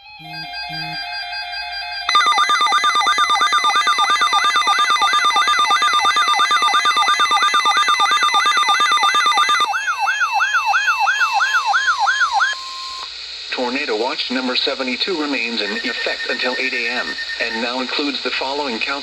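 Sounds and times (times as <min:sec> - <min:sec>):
rising siren-like whoop: 0:08.6 - 0:13.0
steady electronic tone: 0:15.1 - 0:17.8.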